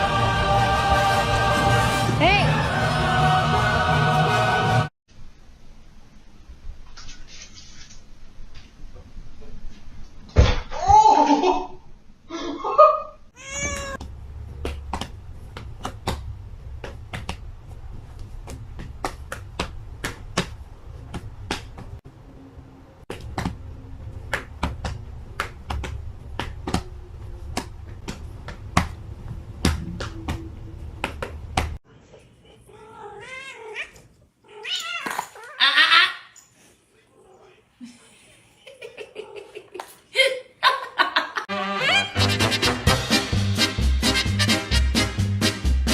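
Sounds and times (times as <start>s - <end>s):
cat meowing: 13.4s - 14.0s, 32.7s - 36.2s
low hum: 22.1s - 31.8s.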